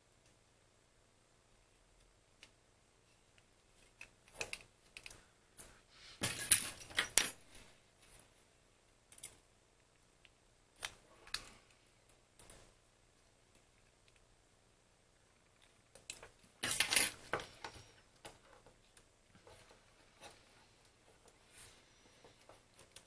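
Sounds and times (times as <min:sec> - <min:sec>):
small hard parts clicking and rattling: 0:15.5 - 0:21.4.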